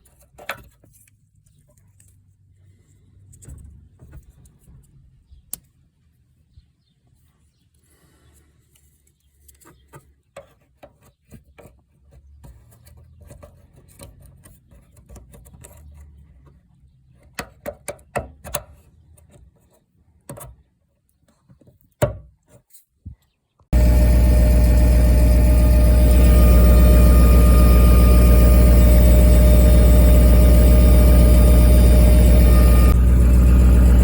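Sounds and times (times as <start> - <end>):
loud mechanical hum: 23.8 - 34.0.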